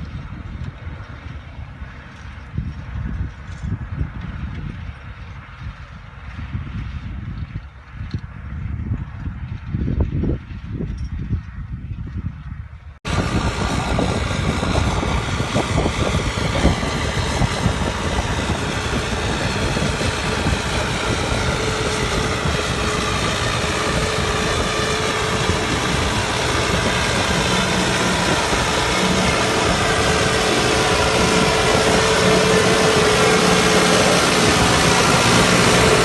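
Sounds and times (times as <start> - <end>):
tractor diesel engine droning: 13.1 - 36.0.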